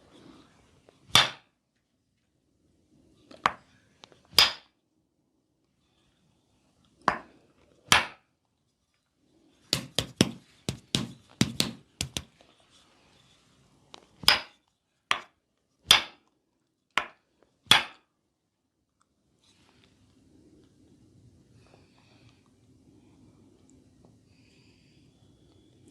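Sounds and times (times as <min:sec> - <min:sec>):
hands smacking a body: 0:09.7 - 0:12.3.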